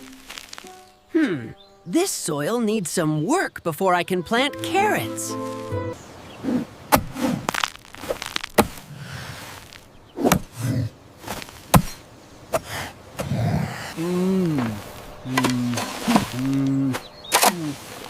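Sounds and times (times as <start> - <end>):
cartoon digging thuds: 14.4 - 17.7.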